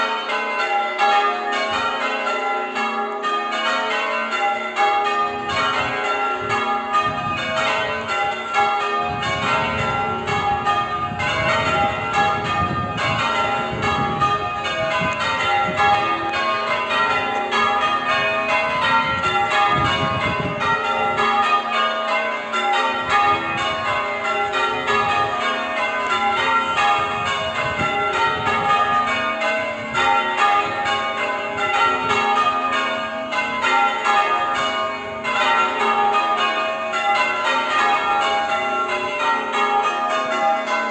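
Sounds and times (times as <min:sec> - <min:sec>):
church bells ringing: 0:00.0 - 0:40.9.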